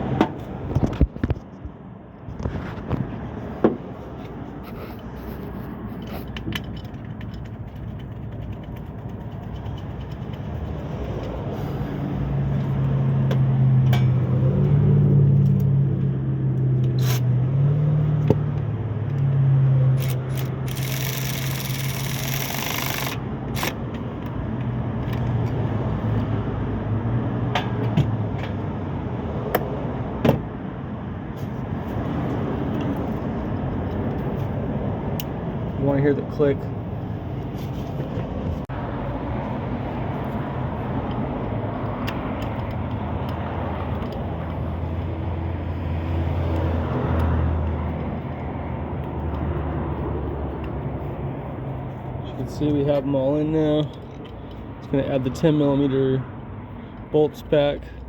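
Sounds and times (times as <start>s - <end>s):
engine drone: 4.8s - 24.0s
tools and parts clicking: 5.9s - 11.3s, 20.0s - 25.6s, 41.8s - 44.6s.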